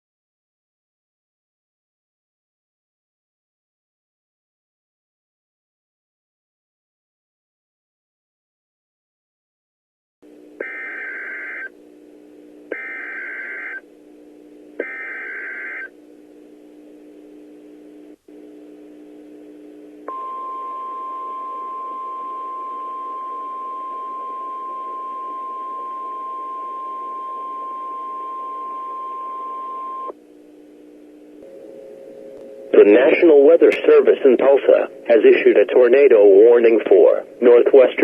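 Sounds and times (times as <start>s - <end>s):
steady low hum: 10.2s - 38.0s.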